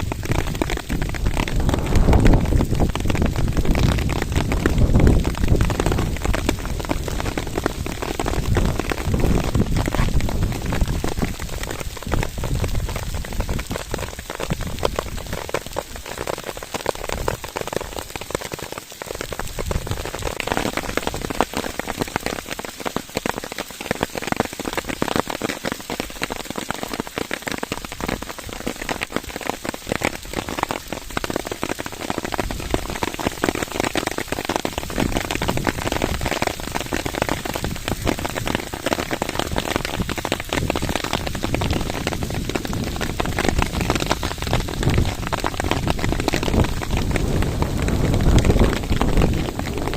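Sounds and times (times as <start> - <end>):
low thunder rumble: 0.0 - 7.6, 44.7 - 49.9
heavy rain: 0.0 - 49.9.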